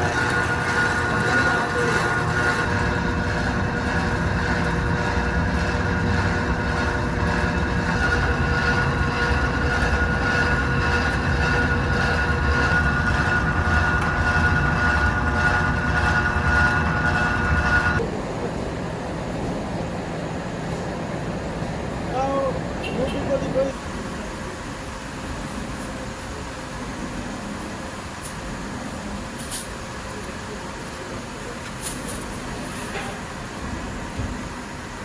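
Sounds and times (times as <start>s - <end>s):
high-pitched machine whine: 0.0s - 18.1s
machinery low rumble: 0.0s - 22.8s.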